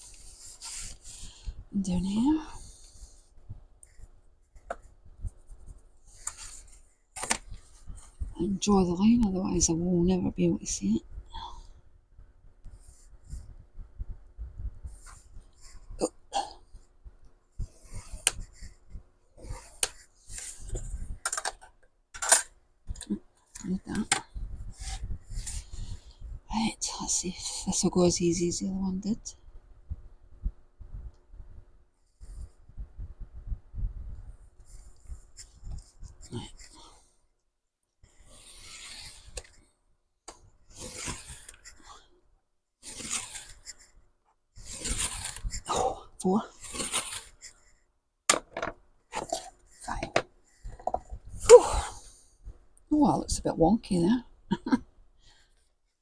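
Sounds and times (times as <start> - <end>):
tools rubbing and scraping: 38.2 - 39.6, 40.7 - 42.0, 42.8 - 43.9, 44.6 - 45.8, 46.4 - 47.7.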